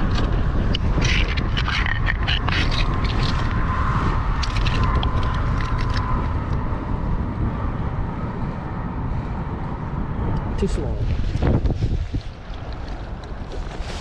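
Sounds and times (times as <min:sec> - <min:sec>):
sharp clicks and ticks: 0:00.0 - 0:03.7, 0:04.3 - 0:06.6
wind buffeting microphone: 0:00.0 - 0:14.0.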